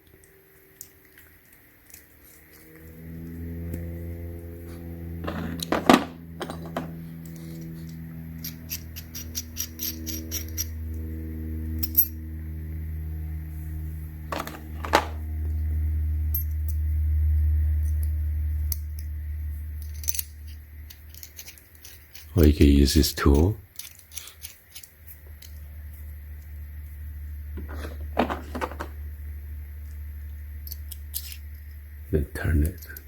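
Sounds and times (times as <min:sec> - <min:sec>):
metal tools clinking: 0:05.2 - 0:07.7, 0:08.4 - 0:10.8, 0:14.3 - 0:15.2, 0:19.8 - 0:20.3, 0:20.9 - 0:22.4, 0:23.3 - 0:25.2, 0:30.6 - 0:31.8.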